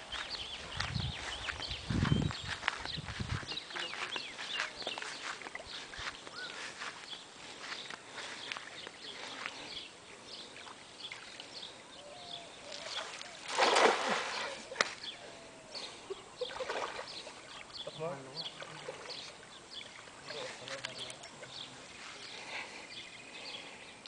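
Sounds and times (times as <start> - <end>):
small birds chirping: 0.0 - 24.0
cast net splashing onto water: 12.8 - 15.0, 16.5 - 17.1.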